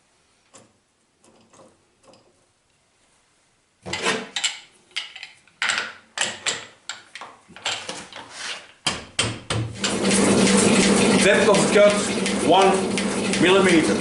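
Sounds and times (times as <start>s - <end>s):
machine motor humming: 9.8s - 14.0s.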